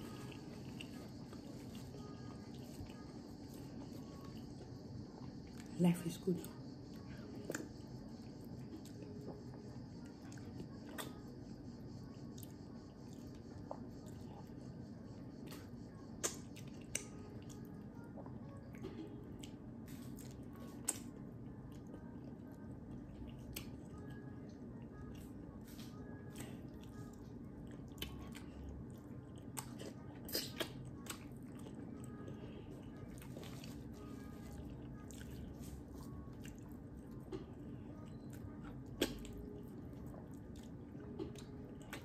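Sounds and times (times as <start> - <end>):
person chewing food: 0.0 - 5.7, 16.2 - 24.2, 24.9 - 42.0
steady low hum: 0.0 - 42.0.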